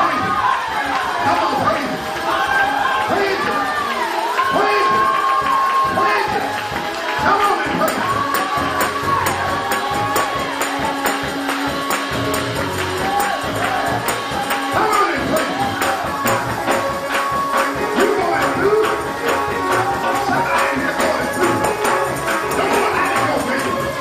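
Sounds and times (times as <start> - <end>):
voices singing and shouting: 0.0 - 24.0
tambourine beat: 0.1 - 24.0
held instrument notes: 6.9 - 24.0.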